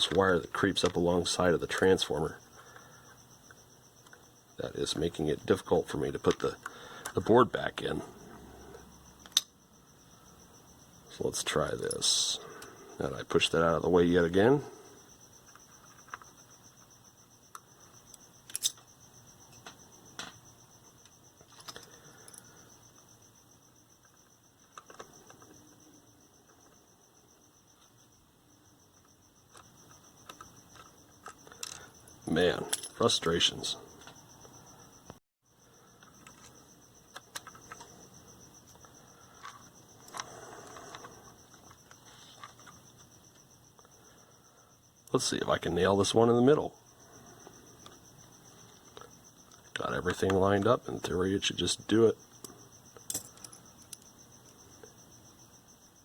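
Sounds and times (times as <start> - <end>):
small screws and plastic parts clicking: 0.1 - 1.0, 2.7 - 4.2, 6.2 - 7.4, 8.7 - 9.6, 15.4 - 16.9, 17.5 - 25.8, 29.0 - 33.1, 35.9 - 44.0, 52.2 - 55.1.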